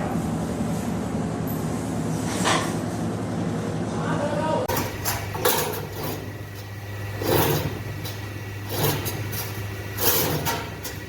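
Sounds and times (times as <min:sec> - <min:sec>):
machine motor hum: 0:04.7 - 0:11.0
metallic machine stroke: 0:04.7 - 0:11.0.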